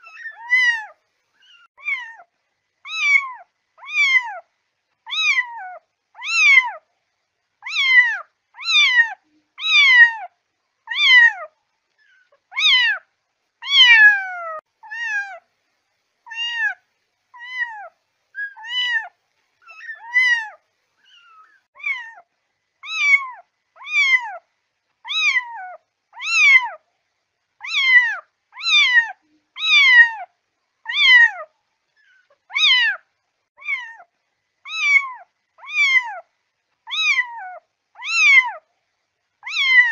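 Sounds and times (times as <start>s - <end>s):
kitten meowing: 0.0s - 2.2s, 2.9s - 4.4s, 5.1s - 6.8s, 7.6s - 10.3s, 10.9s - 11.5s, 12.1s - 13.0s, 13.6s - 15.4s, 16.3s - 16.8s, 17.4s - 22.2s, 22.8s - 24.4s, 25.0s - 26.8s, 27.6s - 30.3s, 30.9s - 33.0s, 33.6s - 34.1s, 34.7s - 36.2s, 36.9s - 38.6s, 39.4s - 39.9s.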